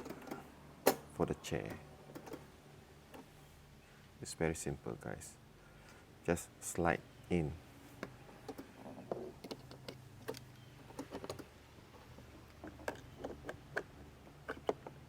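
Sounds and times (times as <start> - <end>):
low steady hum: 0.0 - 15.0
plastic parts clicking: 8.0 - 11.5, 12.1 - 15.0.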